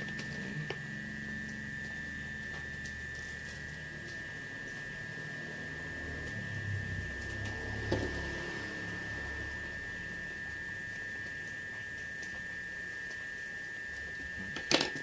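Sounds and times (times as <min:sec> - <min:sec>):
high-pitched electrical whine: 0:00.0 - 0:15.0
low hum: 0:00.0 - 0:15.0.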